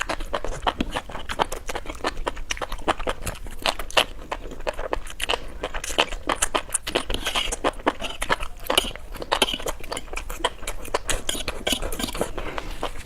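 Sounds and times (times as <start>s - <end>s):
person chewing crunchy food: 0.0s - 13.0s.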